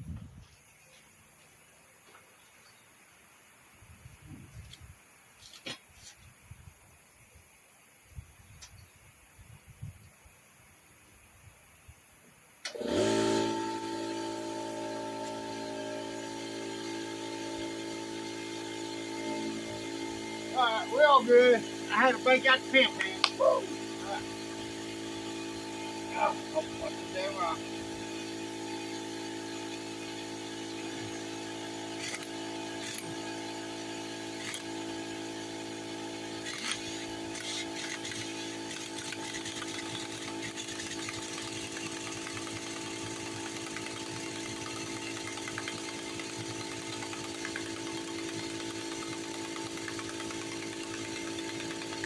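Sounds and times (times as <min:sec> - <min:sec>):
air compressor humming: 0:12.6 - 0:52.0
sharp metallic clicks and knocks: 0:36.5 - 0:52.0.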